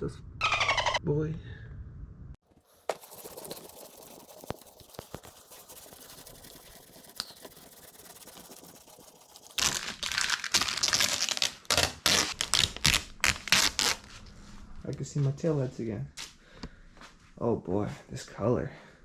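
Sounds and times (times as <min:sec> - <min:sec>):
plastic film crackling and tearing: 0:08.8 - 0:14.1.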